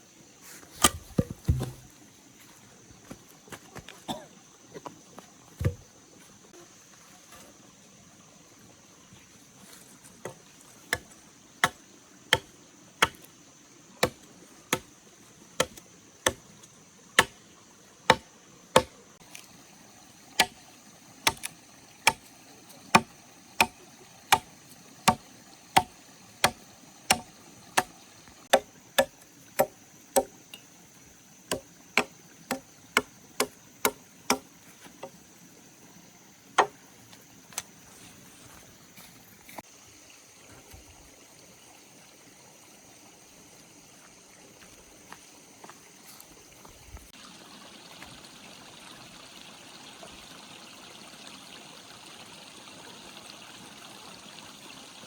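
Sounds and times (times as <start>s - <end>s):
tool chopping wood: 0.8s - 1.9s, 5.6s - 5.8s, 10.3s - 13.3s, 14.0s - 14.9s, 15.6s - 16.4s, 17.2s - 17.4s, 18.1s - 19.5s, 20.4s - 20.6s, 21.2s - 22.2s, 22.9s - 25.2s, 25.8s - 30.3s, 31.5s - 34.5s.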